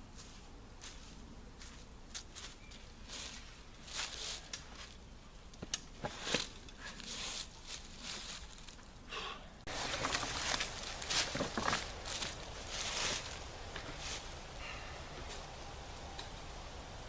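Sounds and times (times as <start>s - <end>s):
footsteps in dry leaf litter: 0.0s - 5.0s, 6.1s - 8.8s, 9.7s - 15.6s
twigs snapping: 9.7s - 14.3s.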